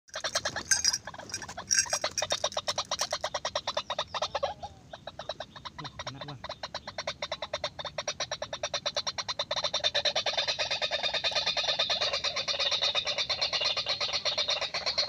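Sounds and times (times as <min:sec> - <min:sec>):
animal calling sharp notes: 0:00.1 - 0:04.8.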